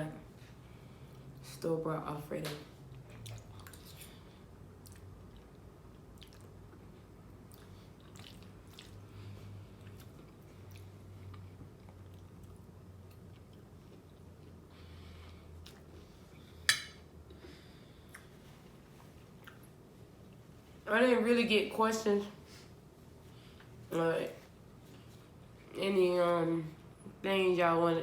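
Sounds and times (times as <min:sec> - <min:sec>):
person chewing food: 0:02.9 - 0:16.5, 0:18.0 - 0:20.4.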